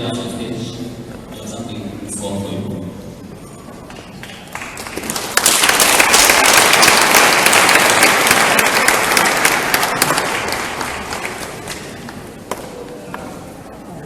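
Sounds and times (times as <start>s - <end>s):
audience applauding: 3.9s - 12.6s.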